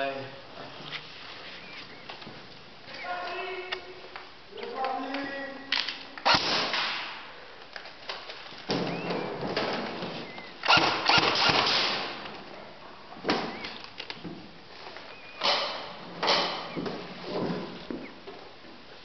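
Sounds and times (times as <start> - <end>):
airsoft guns firing bursts: 6.2 - 7.2, 10.6 - 12.3.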